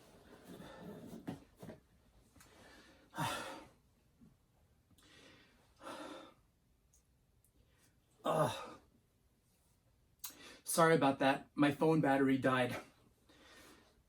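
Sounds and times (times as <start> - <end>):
man sighing heavily: 3.1 - 3.7, 8.2 - 8.8.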